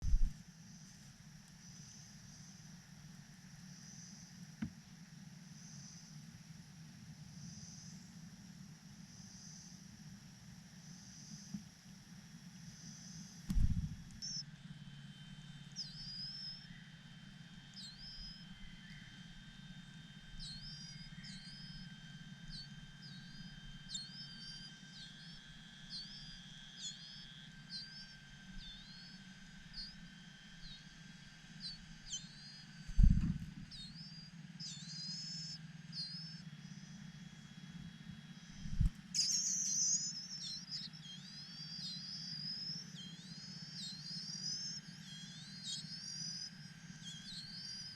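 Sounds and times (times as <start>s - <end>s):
steady low hum: 0.0s - 47.9s
bird chirping: 13.5s - 14.4s, 38.6s - 47.9s.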